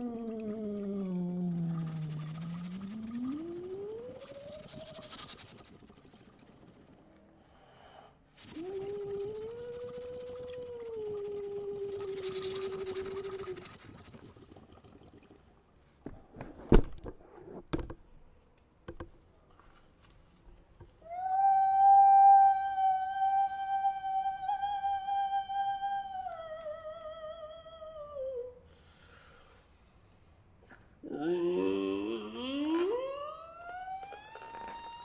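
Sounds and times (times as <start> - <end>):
voice holding long high note: 21.0 - 28.6.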